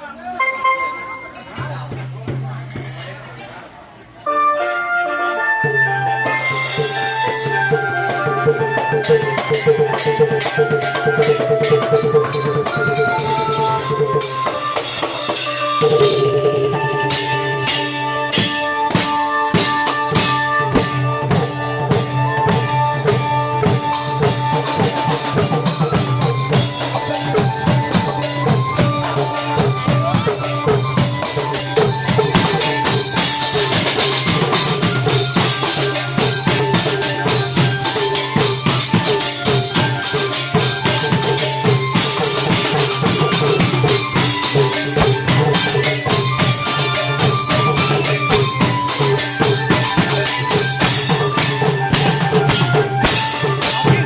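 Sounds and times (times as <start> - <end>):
small hand cymbals jingling: 0.0 - 3.4, 23.7 - 54.0
stepped melody line: 0.3 - 2.1, 4.3 - 54.0
drum strokes: 5.5 - 54.0.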